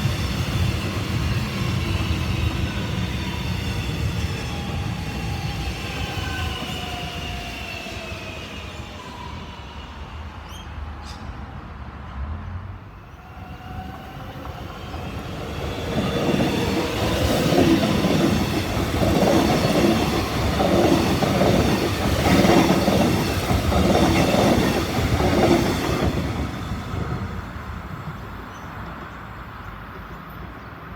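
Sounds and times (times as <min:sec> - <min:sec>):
train wheels clattering over rails: 0:13.9 - 0:30.9.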